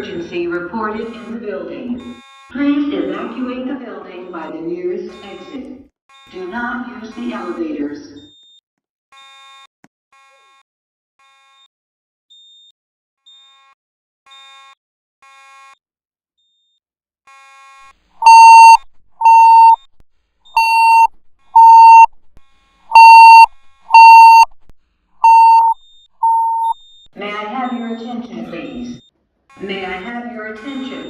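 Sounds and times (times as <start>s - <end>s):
spoken evacuation messages: 0.0s - 8.2s, 25.2s - 29.0s, 29.6s - 31.0s
faint beeps: 18.2s - 19.8s, 20.6s - 22.1s, 23.0s - 24.5s, 25.2s - 26.8s
fire alarm alert tone: 18.2s - 19.8s, 20.6s - 22.1s, 22.9s - 24.5s, 25.2s - 26.8s
loud steady-pitched beeps: 18.2s - 19.8s, 20.6s - 22.1s, 22.9s - 24.5s, 25.2s - 26.8s.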